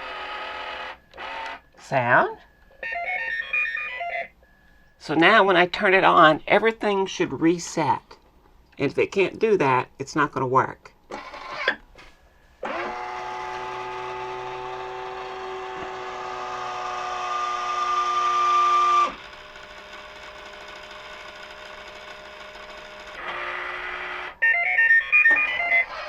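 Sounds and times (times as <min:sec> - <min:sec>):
small gear motors whirring: 0:12.6 - 0:24.4.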